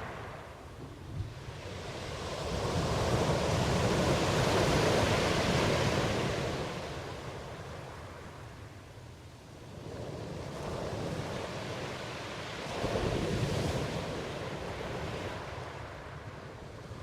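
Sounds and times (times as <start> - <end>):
ocean waves washing in: 0.0 - 8.6.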